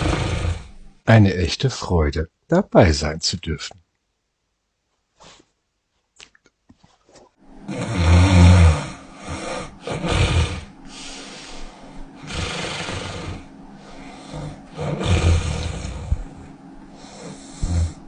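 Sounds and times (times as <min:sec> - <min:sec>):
person snoring loudly: 0:00.0 - 0:00.8, 0:07.6 - 0:11.6, 0:12.2 - 0:18.0.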